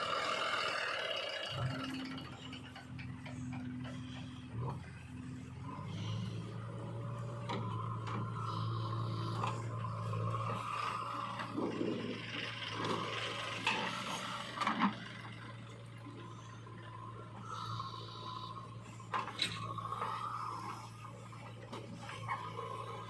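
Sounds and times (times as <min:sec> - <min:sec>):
steady low hum: 0:01.6 - 0:23.0.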